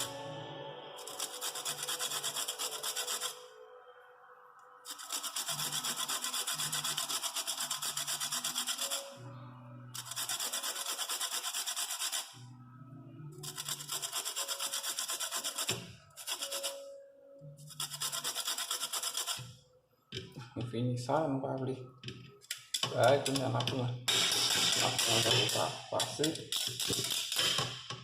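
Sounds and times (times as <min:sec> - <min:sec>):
grating on hand grater: 0:01.0 - 0:03.4, 0:04.9 - 0:09.0, 0:10.0 - 0:12.3, 0:13.4 - 0:16.6, 0:17.8 - 0:19.4.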